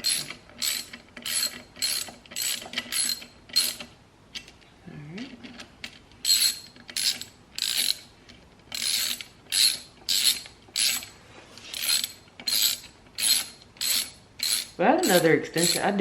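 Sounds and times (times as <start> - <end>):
socket wrench ratchet clicking: 6.3 - 8.0, 8.7 - 11.1, 11.8 - 15.8.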